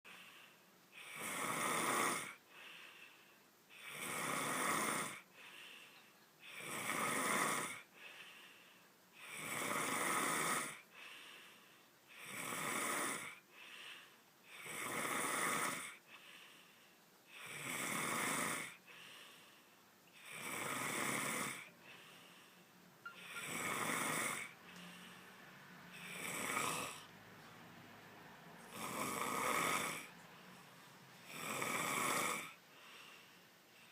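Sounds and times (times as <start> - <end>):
faint breath: 0.1 - 1.2, 2.4 - 3.8, 5.2 - 6.6, 7.8 - 9.3, 10.8 - 12.4, 13.4 - 14.3, 15.9 - 17.5, 18.7 - 20.3, 21.6 - 26.2, 30.1 - 31.3, 32.6 - 33.9
person snoring loudly: 1.0 - 2.4, 3.8 - 5.3, 6.5 - 7.9, 9.2 - 10.8, 12.2 - 13.4, 14.5 - 16.0, 17.3 - 18.8, 20.2 - 21.7, 23.1 - 25.0, 25.9 - 27.1, 28.7 - 30.1, 31.3 - 32.6.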